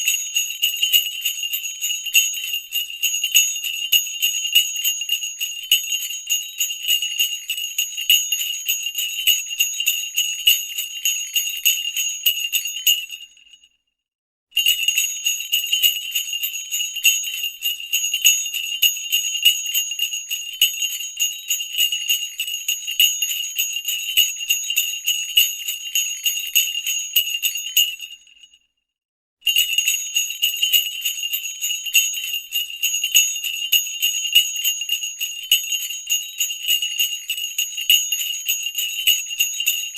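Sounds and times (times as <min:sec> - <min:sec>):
sleigh bells jingling: 0:00.0 - 0:13.2, 0:29.5 - 0:39.9.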